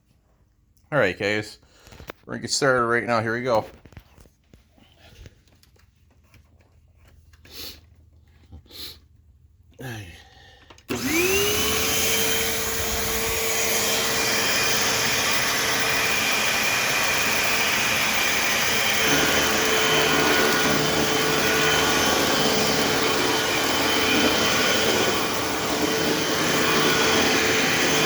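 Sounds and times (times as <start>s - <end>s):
vacuum cleaner motor whine: 10.9s - 28.0s.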